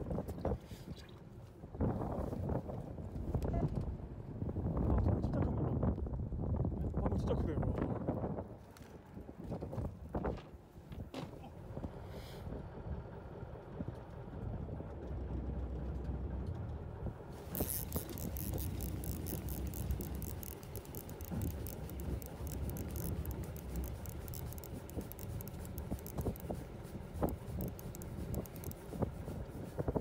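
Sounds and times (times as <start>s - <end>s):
wind rumble on microphone: 0.0s - 30.0s
dense fine crackling rattle: 14.8s - 30.0s
sharp clicks: 17.4s - 29.1s.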